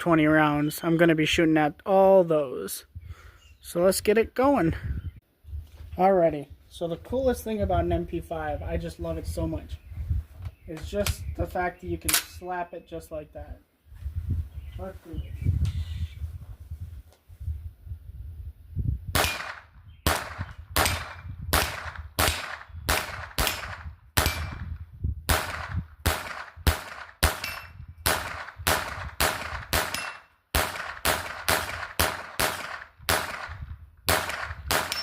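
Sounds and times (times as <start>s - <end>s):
rifle shots: 19.2s - 24.6s, 25.3s - 35.0s
bullets ringing on steel targets: 27.3s - 27.8s, 29.8s - 30.3s, 34.7s - 35.0s.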